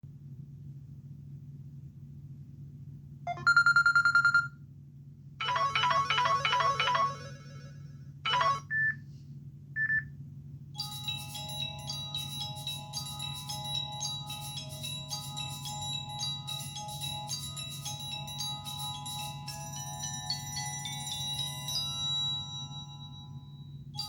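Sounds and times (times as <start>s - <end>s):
low steady hum: 0.1s - 24.0s
phone ringtones: 3.3s - 4.5s, 5.4s - 9.0s.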